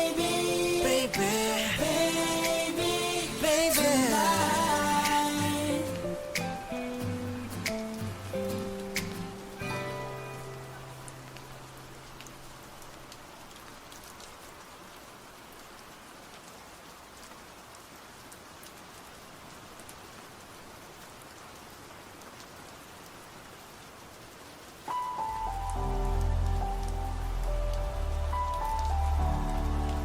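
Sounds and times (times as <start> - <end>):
raindrops ticking: 0.0 - 15.0, 24.9 - 30.0
rain pattering: 0.0 - 30.0.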